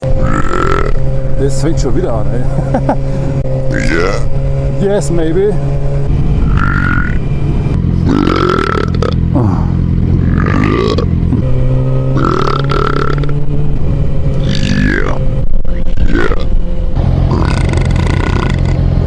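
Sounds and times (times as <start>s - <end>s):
low engine drone: 0.0s - 19.0s
man belching: 0.2s - 1.0s, 3.7s - 4.3s, 6.4s - 7.2s, 8.0s - 11.5s, 12.1s - 13.3s, 14.4s - 15.2s, 16.0s - 16.5s, 17.3s - 18.9s.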